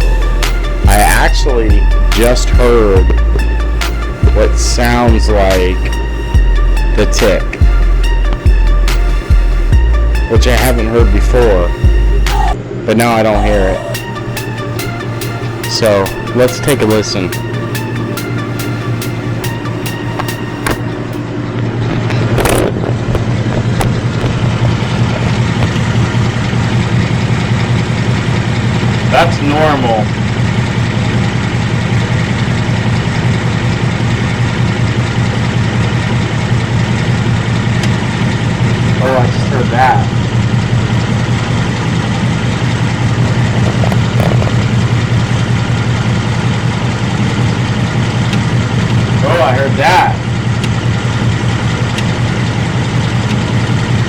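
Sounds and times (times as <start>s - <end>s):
car engine idling: 0.0s - 54.0s
sharp clicks: 50.6s - 50.8s.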